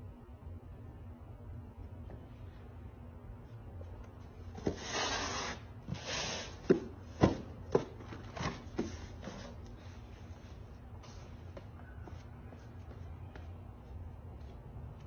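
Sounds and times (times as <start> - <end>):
cardboard packages scraping: 4.5 - 9.8.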